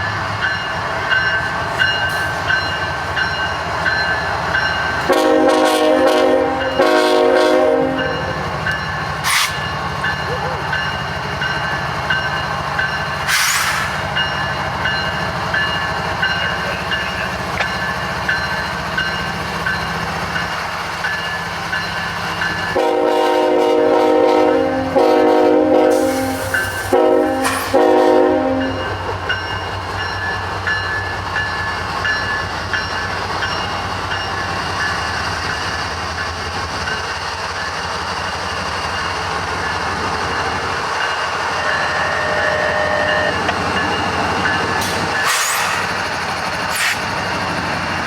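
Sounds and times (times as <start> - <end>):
locomotive air horn blasts: 5.1 - 8.3, 22.8 - 28.8, 41.7 - 43.4.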